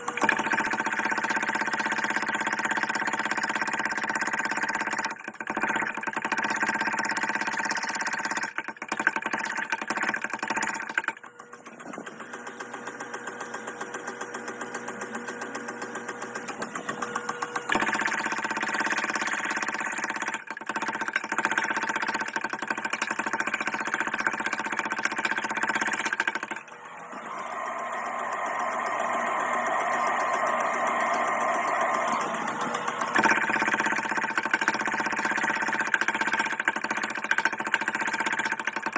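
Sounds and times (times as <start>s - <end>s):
power hammer striking: 14.4s - 38.4s.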